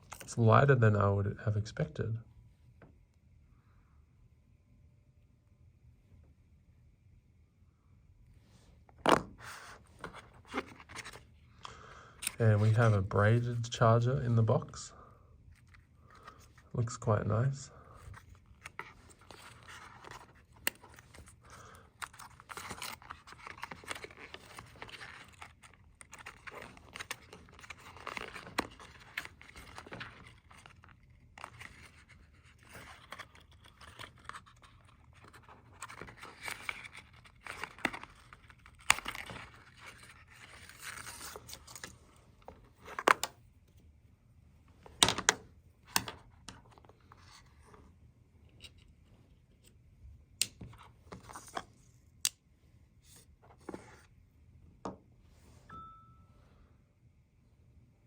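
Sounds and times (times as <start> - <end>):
paper and card rustling: 9.0 - 11.4, 12.2 - 13.8, 15.5 - 43.4, 50.6 - 52.0, 53.0 - 54.1.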